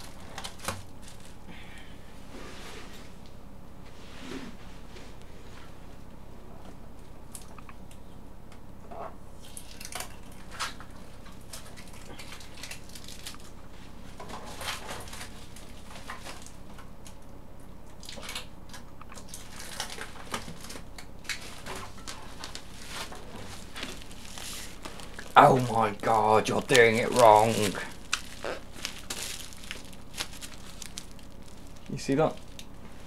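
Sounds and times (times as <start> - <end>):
low steady hum: 0.0 - 33.0
hands scraping and rustling packing: 19.4 - 33.0.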